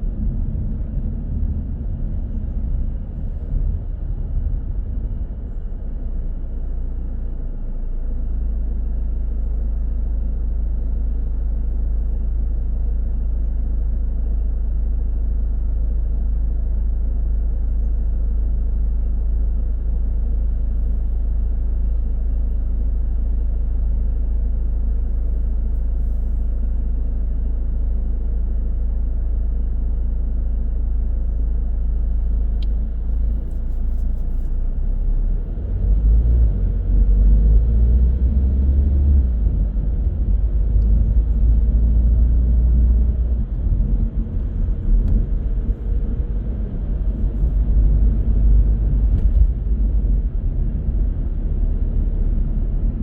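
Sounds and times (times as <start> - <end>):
car driving in traffic: 18.6 - 53.0.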